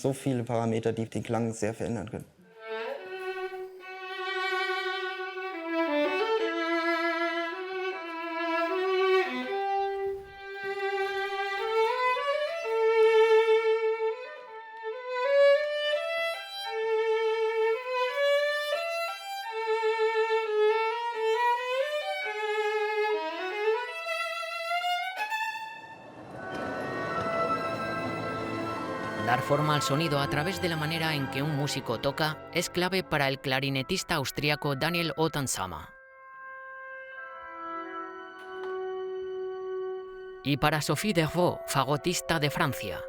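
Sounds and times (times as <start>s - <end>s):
solo violin melody: 2.4s - 35.8s.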